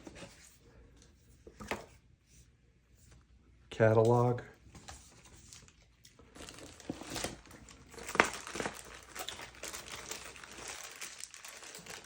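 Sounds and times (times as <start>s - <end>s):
packaging crinkling and rustling: 4.8s - 12.0s.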